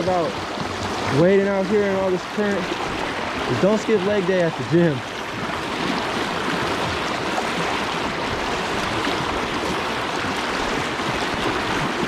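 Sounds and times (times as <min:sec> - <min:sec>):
rushing creek water: 0:00.0 - 0:12.0.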